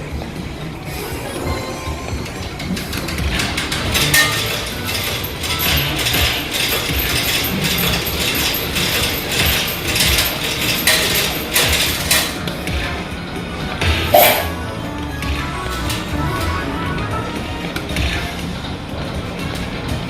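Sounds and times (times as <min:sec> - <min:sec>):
poker machine clicking and rattling: 0:02.5 - 0:12.8.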